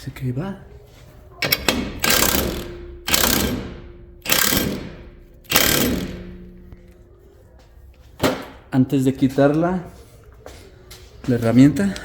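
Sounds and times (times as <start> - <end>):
impact wrench bursts: 1.4 - 6.8.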